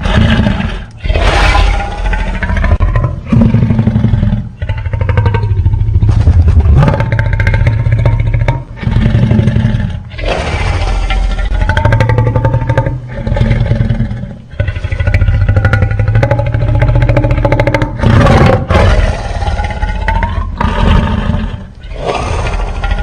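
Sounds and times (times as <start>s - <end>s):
monster roars: 0.0s - 4.8s, 8.8s - 12.1s, 18.0s - 23.0s
deep rumble: 0.0s - 23.0s.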